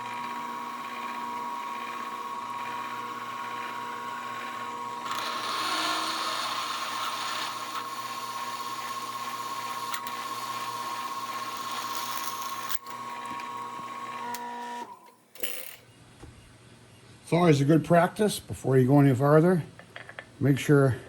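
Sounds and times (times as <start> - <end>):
milling machine drilling metal: 4.5 - 14.9.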